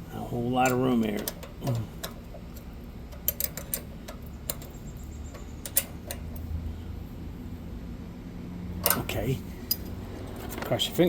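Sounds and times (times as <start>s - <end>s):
low steady hum: 0.0s - 11.0s
wrench clicks and taps on metal: 0.6s - 6.4s, 8.8s - 9.1s.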